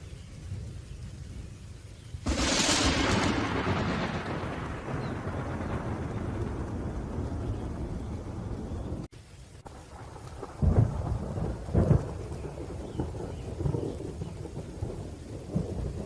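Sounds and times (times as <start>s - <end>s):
rain falling: 0.0s - 16.0s
rolling thunder: 2.2s - 16.0s
loud thunder claps: 2.3s - 9.1s, 10.0s - 16.0s.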